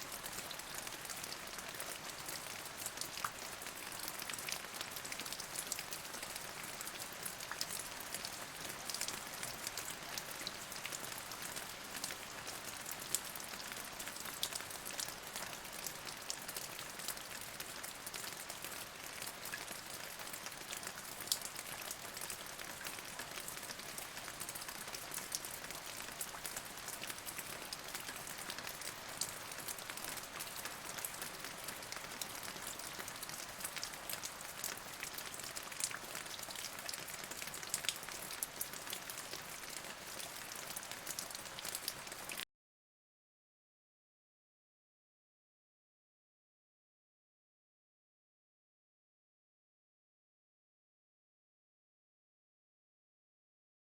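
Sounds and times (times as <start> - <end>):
steady rain falling: 0.0 - 42.4.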